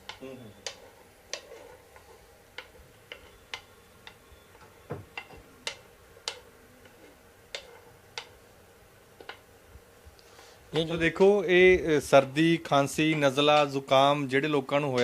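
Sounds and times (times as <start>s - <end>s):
spices popping in a pan: 0.0s - 10.1s
faint steady hum: 0.0s - 15.0s.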